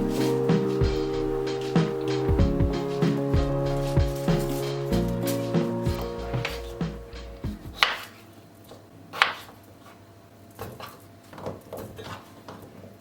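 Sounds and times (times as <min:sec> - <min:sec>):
background music: 0:00.0 - 0:08.0.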